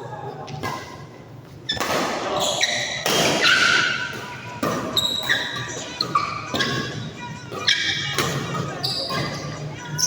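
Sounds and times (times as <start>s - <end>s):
shoes squeaking on court floor: 1.5s - 10.0s
voices: 2.1s - 10.0s.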